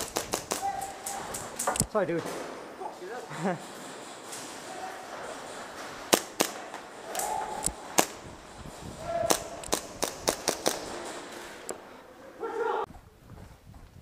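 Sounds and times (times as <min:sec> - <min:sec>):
airsoft guns firing: 0:00.0 - 0:02.7, 0:05.3 - 0:08.4, 0:09.1 - 0:11.8.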